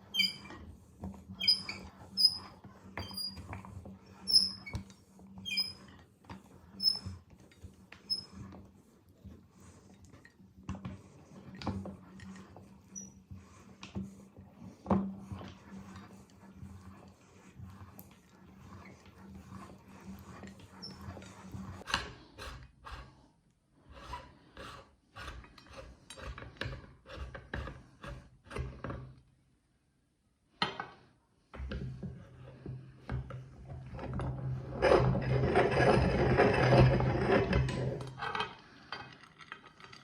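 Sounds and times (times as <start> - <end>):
meat grinder grinding soap: 33.9 - 40.0.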